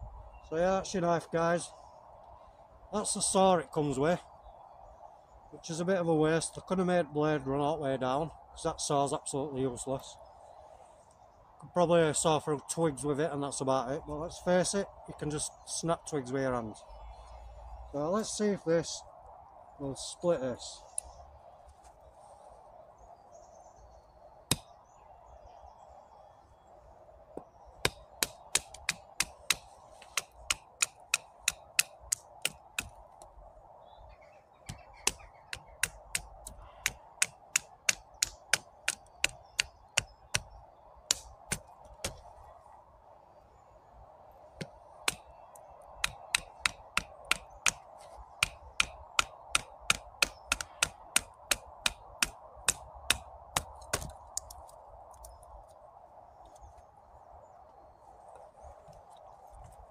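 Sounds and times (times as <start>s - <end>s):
axe chopping wood: 27.8s - 33.0s, 44.6s - 45.3s, 46.0s - 47.8s, 48.4s - 54.2s.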